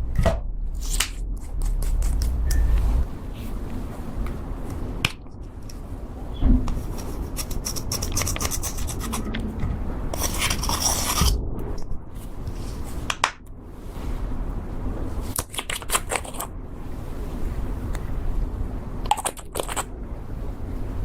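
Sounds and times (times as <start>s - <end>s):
sticky clicks and pops: 19.1s - 19.9s.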